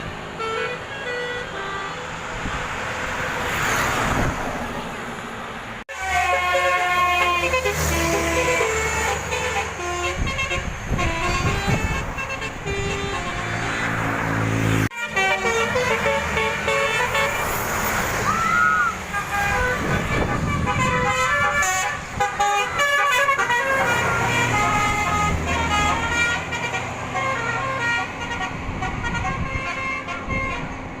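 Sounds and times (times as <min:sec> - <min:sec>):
multi-tone musical horn: 0:00.0 - 0:02.1, 0:05.9 - 0:17.6, 0:19.1 - 0:30.8.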